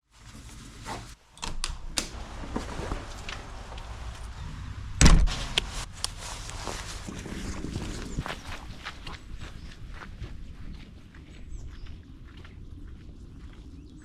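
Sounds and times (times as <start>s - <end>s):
low rumble: 1.8s - 8.3s
heavy thud: 5.0s - 5.5s.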